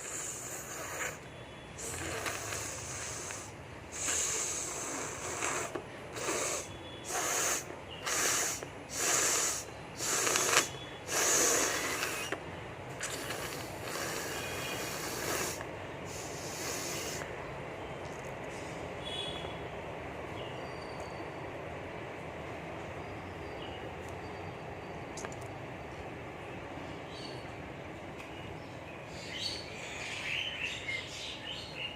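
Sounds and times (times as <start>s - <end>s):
person blowing nose: 0.0s - 1.2s, 1.8s - 12.4s, 13.0s - 17.3s.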